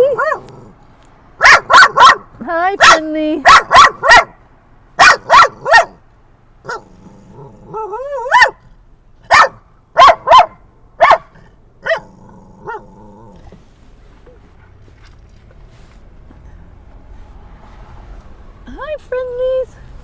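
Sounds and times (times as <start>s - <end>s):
dog barking: 0.0s - 0.7s, 1.4s - 4.4s, 5.0s - 6.0s, 6.6s - 6.9s, 7.7s - 8.6s, 9.3s - 12.9s
dog whining: 6.7s - 8.6s.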